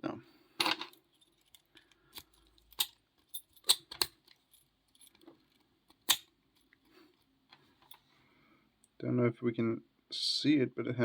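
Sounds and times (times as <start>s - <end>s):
padlock and key clicking: 1.4s - 4.3s, 5.9s - 6.3s.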